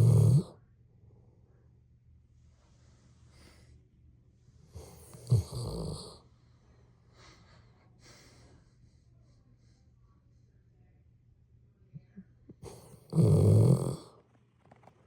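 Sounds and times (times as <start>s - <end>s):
person snoring: 0.0s - 0.5s, 4.8s - 6.2s, 12.6s - 14.1s
faint low hum: 0.0s - 15.0s.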